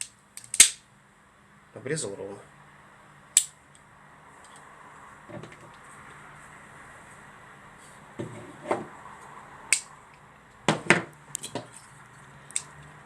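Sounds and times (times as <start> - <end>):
metal pruning shears clicking: 12.5 - 12.8.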